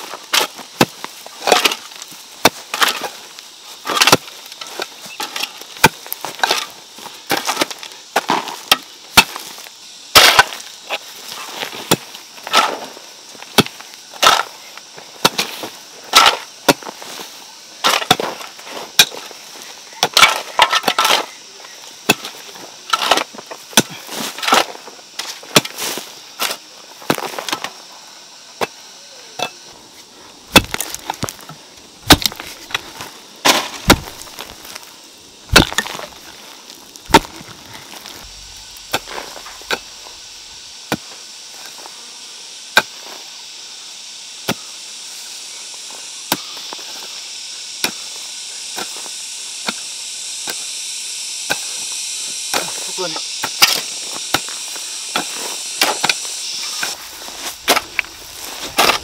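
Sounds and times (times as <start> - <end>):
steady high hiss: 0.0 - 59.0
wood being chopped: 30.5 - 31.4, 32.0 - 34.8, 35.5 - 36.1, 37.0 - 39.9, 57.4 - 59.0.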